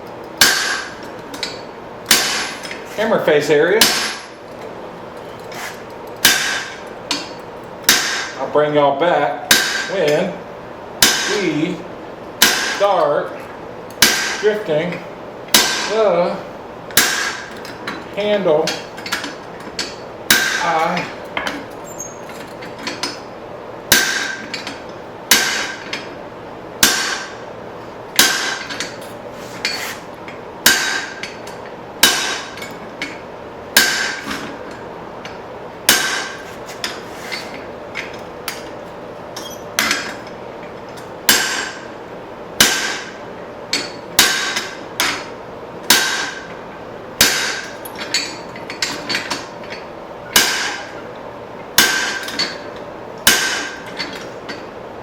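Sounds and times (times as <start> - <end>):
hammer striking steel on anvil: 0.4 - 2.8, 3.8 - 4.3, 6.2 - 8.4, 9.5 - 10.2, 11.0 - 11.6, 12.4 - 13.0, 14.0 - 14.5, 15.5 - 16.0, 16.9 - 18.0, 18.6 - 21.6, 23.9 - 26.1, 26.8 - 27.4, 28.2 - 29.0, 30.6 - 32.8, 33.8 - 34.6, 35.8 - 38.7, 41.3 - 41.9, 42.6 - 45.3, 45.9 - 46.5, 47.2 - 49.5, 50.3 - 51.1, 51.8 - 54.6.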